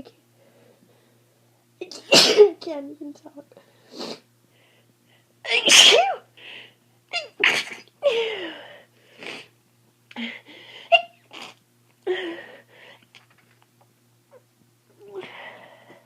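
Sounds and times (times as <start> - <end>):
person sneezing: 2.0 - 2.5, 5.5 - 6.3.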